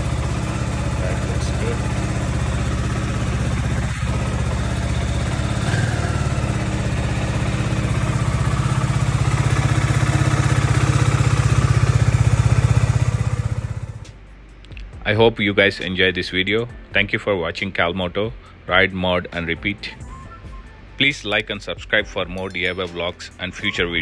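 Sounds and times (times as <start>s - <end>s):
scooter engine idling: 0.0s - 14.2s.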